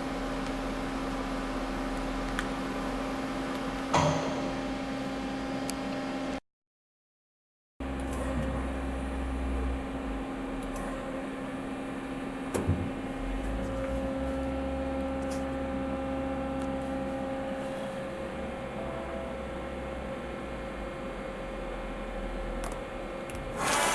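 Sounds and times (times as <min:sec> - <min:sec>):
lathe machine hum: 0:13.2 - 0:21.4.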